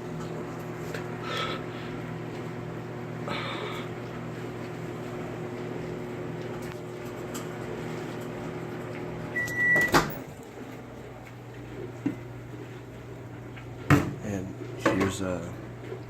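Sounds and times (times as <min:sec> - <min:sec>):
microwave oven humming: 0:00.0 - 0:16.0
microwave timer beep: 0:09.1 - 0:10.2.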